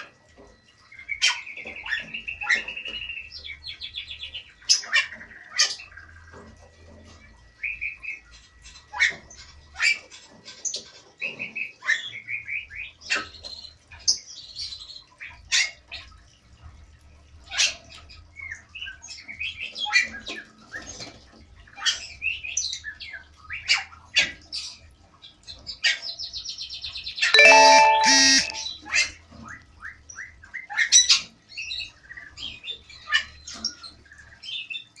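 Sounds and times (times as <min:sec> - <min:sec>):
caged birds chirping and whistling: 0:00.7 - 0:06.1, 0:10.7 - 0:15.1
loud harsh bird squawk: 0:27.5 - 0:28.6.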